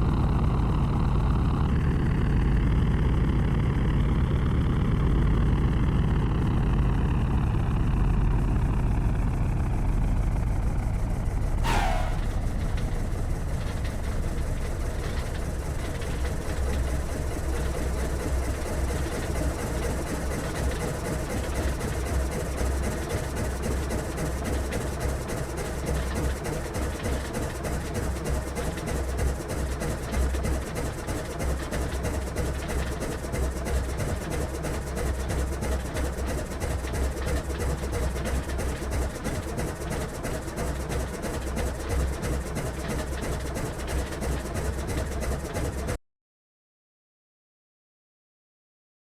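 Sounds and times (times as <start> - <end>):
aircraft propellers droning: 11.6 - 20.3.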